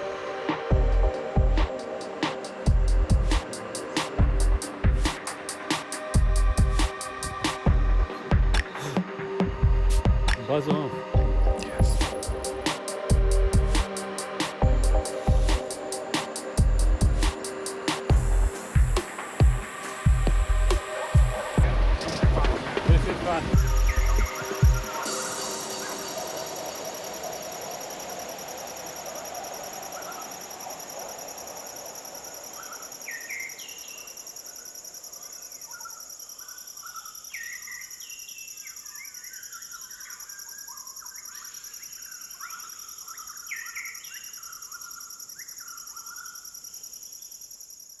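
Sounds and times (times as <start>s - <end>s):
insects droning: 0.0s - 48.0s
birds chirping and whistling: 14.8s - 28.1s, 35.6s - 46.5s.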